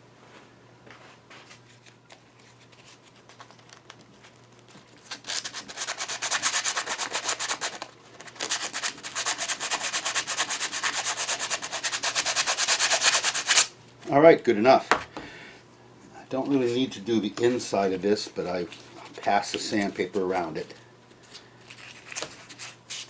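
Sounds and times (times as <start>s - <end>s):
sandpaper rubbing on metal: 5.4s - 7.8s, 8.4s - 13.7s.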